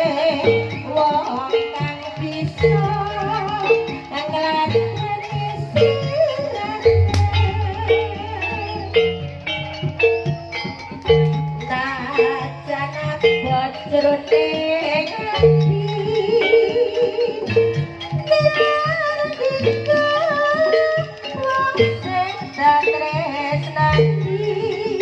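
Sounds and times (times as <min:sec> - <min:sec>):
pitched percussion pattern: 0:00.0 - 0:25.0
wavering melody line: 0:00.0 - 0:25.0
low drum notes: 0:06.8 - 0:10.4.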